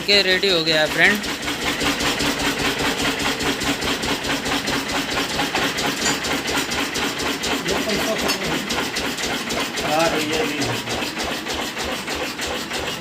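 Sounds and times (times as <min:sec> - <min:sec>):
cutting machine throbbing: 0:00.0 - 0:13.0.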